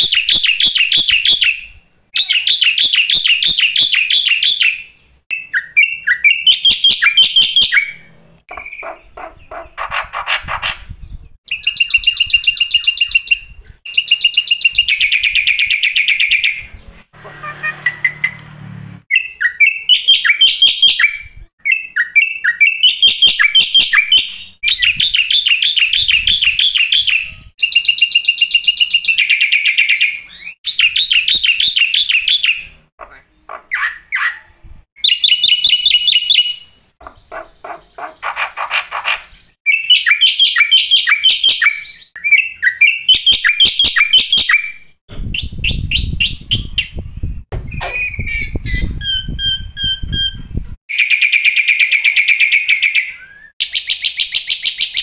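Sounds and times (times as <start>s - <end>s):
bird singing whistles and trills: 0.0s - 9.2s, 10.9s - 16.9s, 19.1s - 32.8s, 33.8s - 55.0s
harsh rasping bird note: 16.8s - 19.0s.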